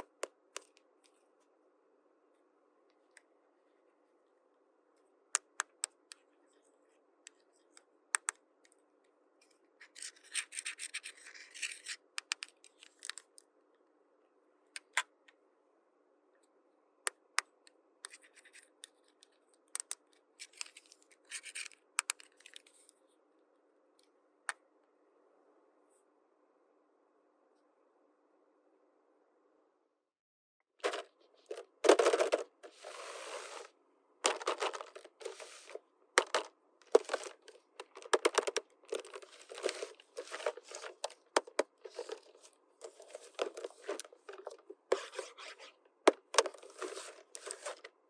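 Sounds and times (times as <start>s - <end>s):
scratchy rubbing and rustling: 30.8s - 33.7s, 34.3s - 45.8s, 46.4s - 47.9s
plastic toy pieces clicking: 36.2s - 39.3s.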